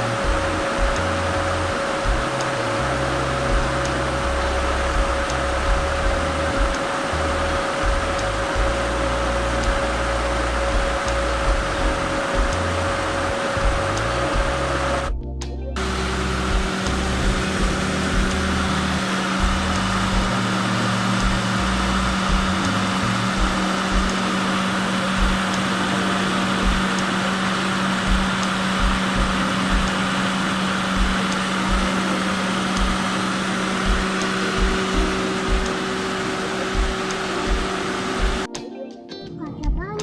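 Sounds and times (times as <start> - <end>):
low thumps: 0.0 - 6.8, 7.4 - 9.8, 10.6 - 13.0, 13.6 - 20.4, 21.2 - 24.2
machine hum: 0.0 - 38.6.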